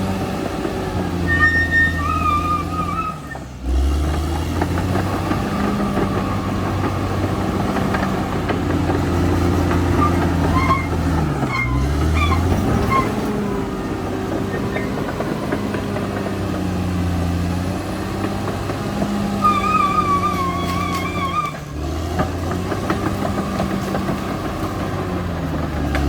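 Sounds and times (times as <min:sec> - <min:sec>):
bulldozer diesel engine: 0:00.0 - 0:26.0
high squeaks: 0:01.2 - 0:03.5, 0:09.7 - 0:13.6, 0:14.4 - 0:15.2, 0:19.4 - 0:21.7.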